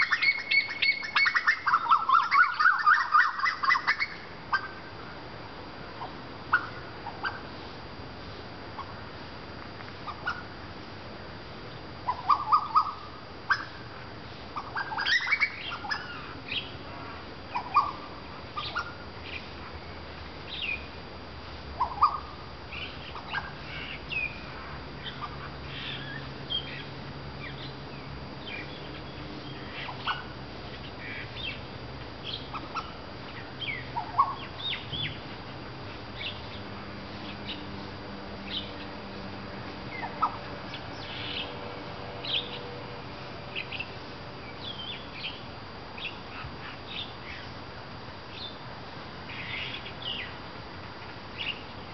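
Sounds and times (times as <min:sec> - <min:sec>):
bird singing chirps and whistles: 0:00.0 - 0:04.8, 0:14.6 - 0:16.7.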